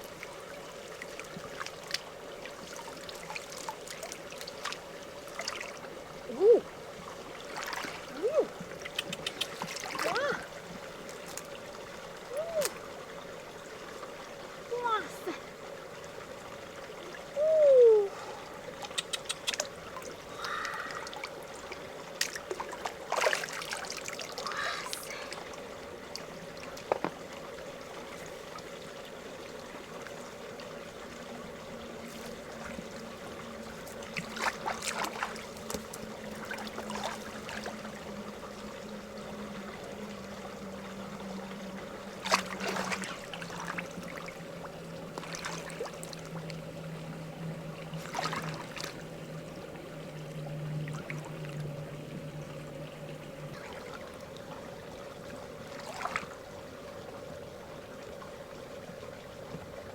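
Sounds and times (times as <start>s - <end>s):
water trickling: 0.0s - 59.9s
steady low hum: 27.6s - 59.9s.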